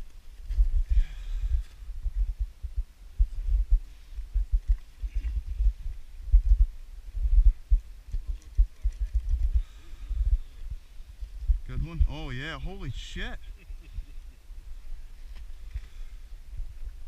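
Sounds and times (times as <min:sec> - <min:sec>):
low thumps buffeting microphone: 0:00.0 - 0:12.1, 0:13.9 - 0:17.0.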